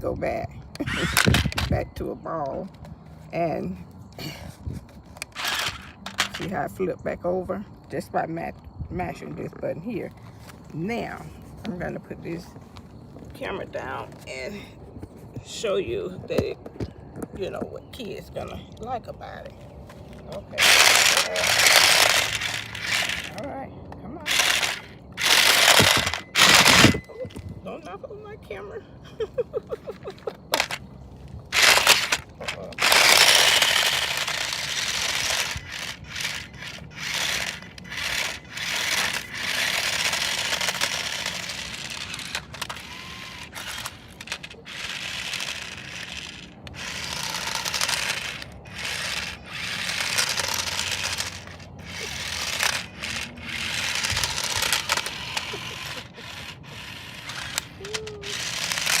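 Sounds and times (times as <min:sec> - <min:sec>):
plastic toy scraping and rattling: 0:00.7 - 0:08.4, 0:17.2 - 0:23.6, 0:24.2 - 0:27.8, 0:29.9 - 0:59.0.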